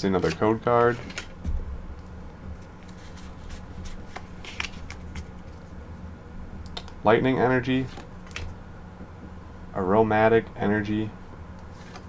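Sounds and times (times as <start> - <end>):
trading cards rustling: 0.0 - 5.7
faint room hum: 0.0 - 12.0
card stock clicks and snaps: 0.2 - 1.4.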